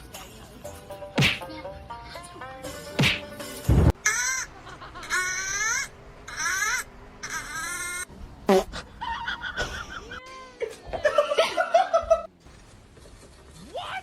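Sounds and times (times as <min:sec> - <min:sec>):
drawn-out wailing cries: 0:04.0 - 0:08.1.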